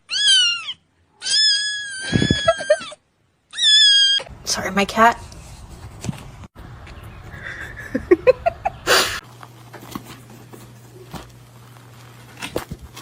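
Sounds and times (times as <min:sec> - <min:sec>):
pet animal squeaky calls: 0:00.0 - 0:04.3.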